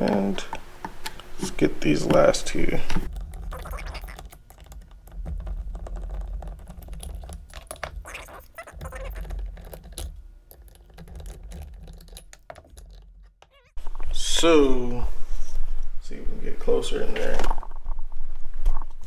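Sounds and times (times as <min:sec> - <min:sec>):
screwdriver and metal parts clicking: 0:03.0 - 0:13.8.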